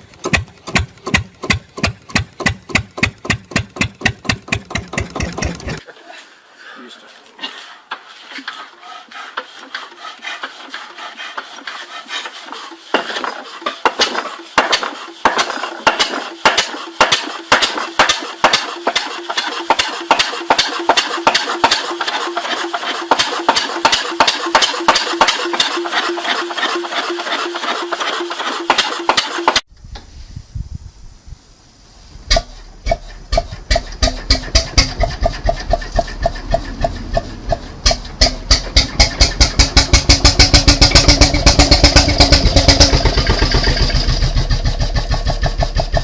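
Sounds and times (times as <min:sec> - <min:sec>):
diesel engine clattering: 0:00.0 - 0:05.8, 0:12.4 - 0:29.6, 0:32.3 - 0:46.0.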